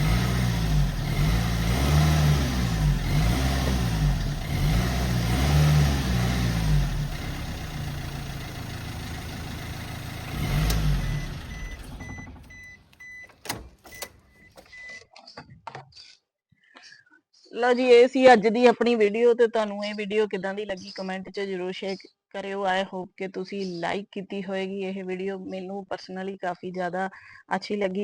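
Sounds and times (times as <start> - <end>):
car engine revving and idling: 0.0 - 12.7
high warning chime beeping: 11.0 - 15.0
sharp clicks: 11.6 - 15.4.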